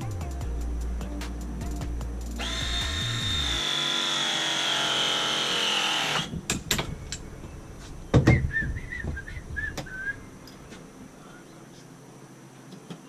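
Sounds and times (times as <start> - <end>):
cordless drill motor whining: 2.4 - 6.4.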